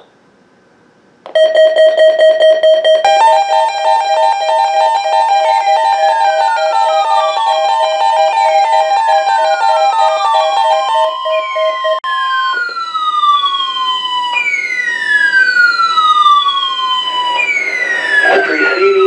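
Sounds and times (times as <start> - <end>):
rapid alarm beeping: 1.4 - 12.0, 16.9 - 19.0
siren-like falling sweep: 3.1 - 19.0.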